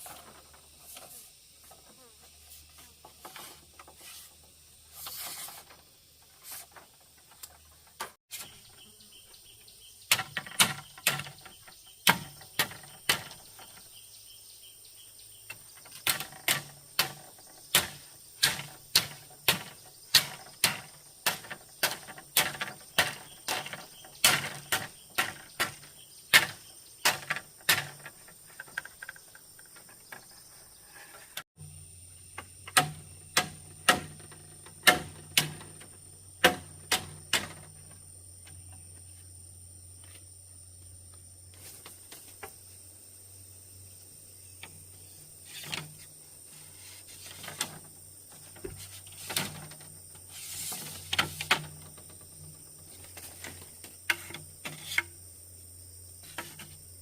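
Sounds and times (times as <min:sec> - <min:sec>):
sharp knocks: 0:10.1 - 0:13.7, 0:32.4 - 0:35.8, 0:36.4 - 0:37.7.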